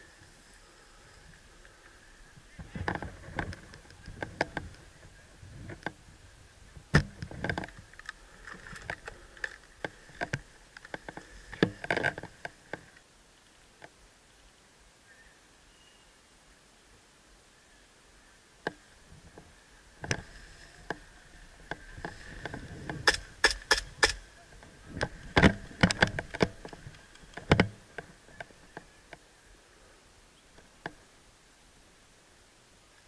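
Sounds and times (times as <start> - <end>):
rustling: 0.0 - 14.5, 18.8 - 31.2
sharp snaps and clicks: 23.0 - 24.2.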